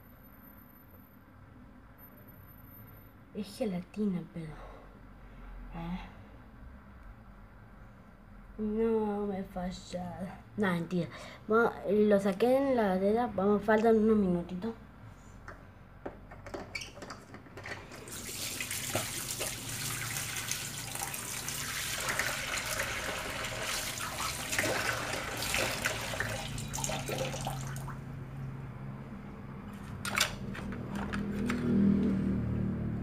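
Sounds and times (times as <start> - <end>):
water running: 17.8 - 28.0.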